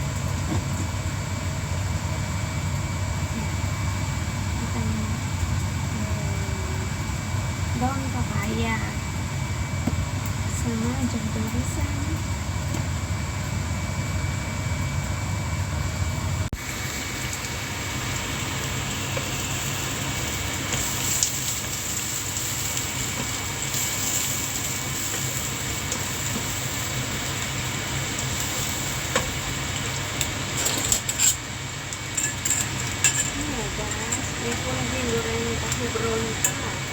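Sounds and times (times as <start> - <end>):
low steady hum: 0.0 - 36.9
tofu sizzling in hot oil: 16.6 - 36.9.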